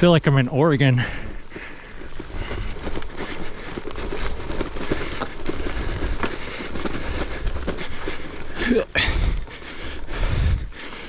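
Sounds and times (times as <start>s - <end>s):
bicycle tyres crackling on dirt: 0.0s - 11.0s
wind rumble on microphone: 10.1s - 10.7s.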